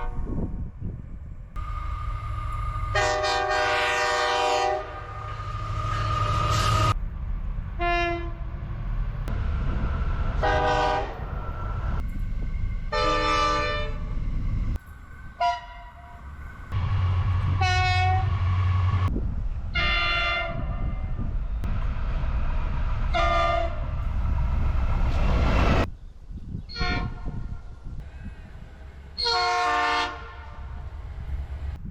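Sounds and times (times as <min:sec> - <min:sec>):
train horn blasts: 0:00.0 - 0:00.5, 0:01.6 - 0:07.0, 0:07.8 - 0:08.4, 0:10.4 - 0:11.7, 0:12.9 - 0:14.1, 0:15.4 - 0:19.1, 0:19.7 - 0:21.2, 0:23.1 - 0:23.8, 0:26.7 - 0:27.5, 0:29.2 - 0:30.8
passing train rumble: 0:00.0 - 0:31.9.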